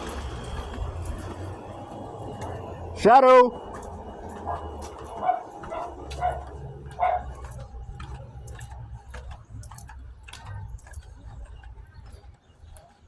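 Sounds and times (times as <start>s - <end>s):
dog barking: 4.3s - 8.7s.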